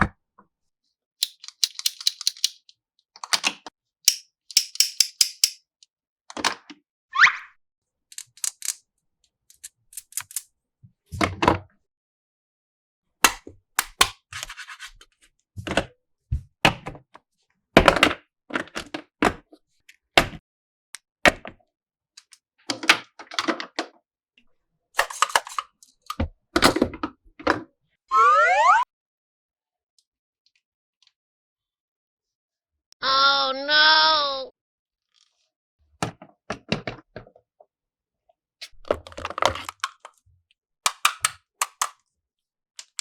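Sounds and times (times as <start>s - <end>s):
plastic toy pieces clicking: 1.2s - 5.6s, 8.1s - 8.8s, 40.9s - 42.0s
loud rising tone: 28.1s - 28.8s.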